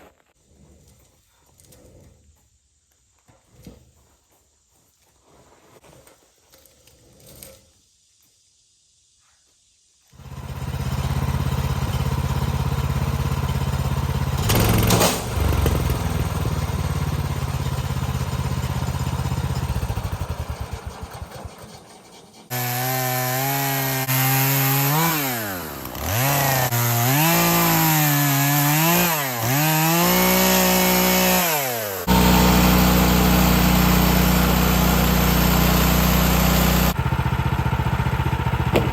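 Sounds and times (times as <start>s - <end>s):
saw cutting through log: 10.2s - 38.9s
sawmill engine running: 10.2s - 38.9s.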